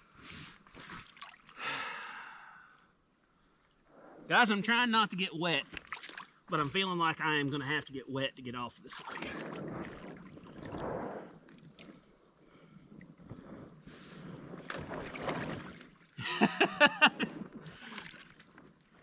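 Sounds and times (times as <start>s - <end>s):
water sloshing around air mattress: 5.6s - 6.7s, 8.9s - 10.8s, 14.6s - 16.2s, 17.3s - 19.0s.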